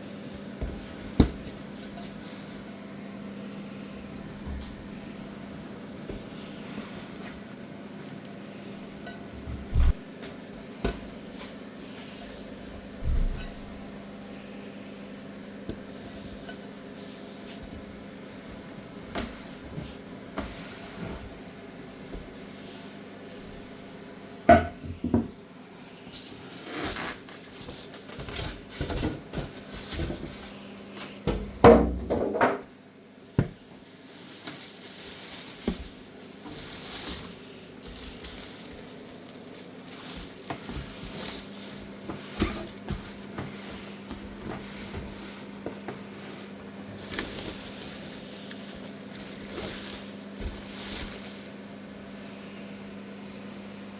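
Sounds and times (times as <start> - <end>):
packaging knocks and rubbing: 33.8 - 43.5.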